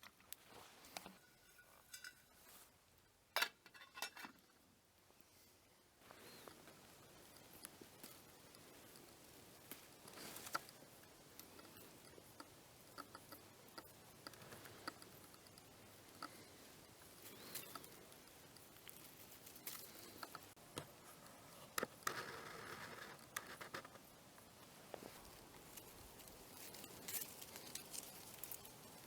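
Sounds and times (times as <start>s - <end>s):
rustle: 0.0s - 29.0s
twig fire clicks and snaps: 6.3s - 20.9s, 24.6s - 29.0s.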